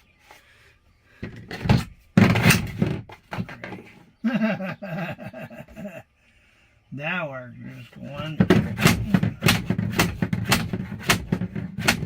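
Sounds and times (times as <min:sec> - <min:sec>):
hardware knocking and thudding: 0:01.2 - 0:04.0, 0:08.1 - 0:12.0
person speaking: 0:06.9 - 0:09.2.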